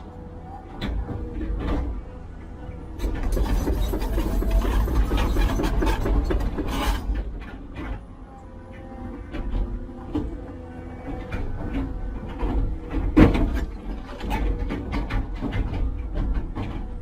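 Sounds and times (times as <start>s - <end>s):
heavy machine engine running: 0.0s - 17.0s
loud scraping and clattering: 3.0s - 8.0s.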